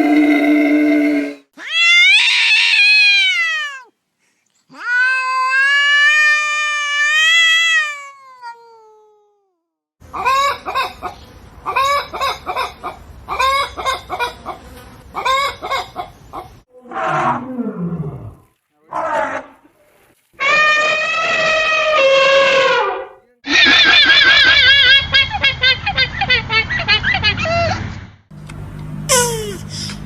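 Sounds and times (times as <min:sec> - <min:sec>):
animal drawn-out pitched cries: 0:00.0 - 0:03.8, 0:04.7 - 0:09.2, 0:20.4 - 0:25.4.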